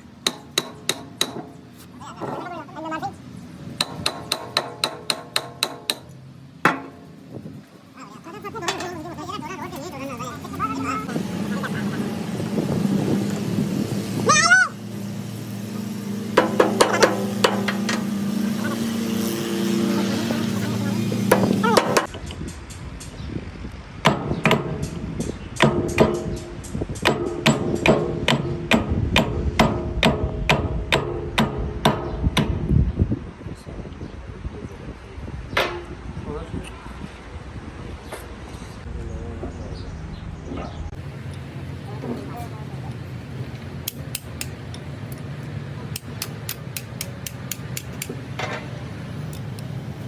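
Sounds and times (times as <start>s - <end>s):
hammer striking metal: 0.2s - 1.6s, 3.8s - 7.2s, 16.4s - 18.5s, 21.2s - 22.2s, 24.0s - 32.6s
tools tapping on metal: 0.3s - 1.6s, 3.8s - 7.2s, 16.4s - 18.2s, 21.3s - 22.1s, 45.9s - 49.6s.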